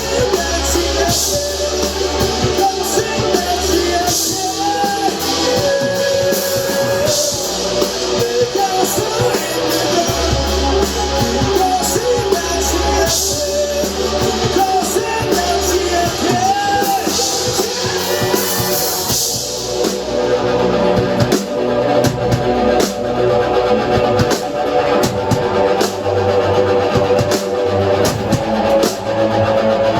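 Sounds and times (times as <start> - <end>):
person singing: 0.0 - 20.5
drums: 0.0 - 29.9
electric guitar: 0.0 - 29.9.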